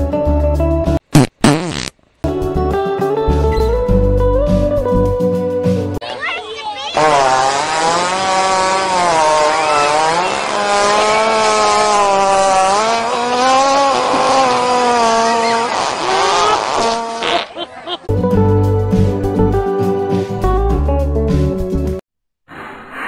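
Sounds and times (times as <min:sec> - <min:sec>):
long buzzy fart: 0:01.0 - 0:02.0, 0:06.9 - 0:17.6.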